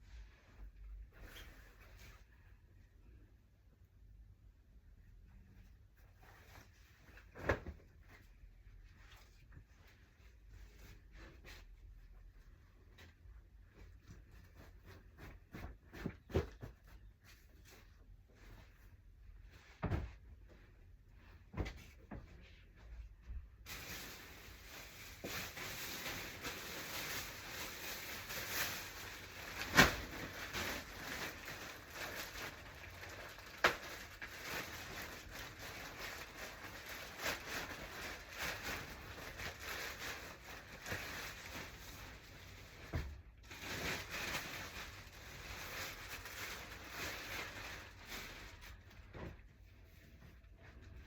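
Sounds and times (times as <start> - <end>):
plastic packaging rustling: 23.6 - 49.5.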